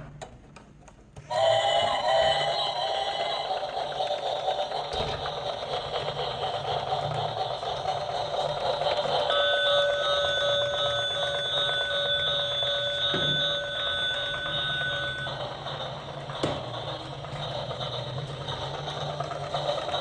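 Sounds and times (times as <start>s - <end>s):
busy whirring noise: 0.1s - 20.0s
electronic ringing tone: 9.3s - 15.6s.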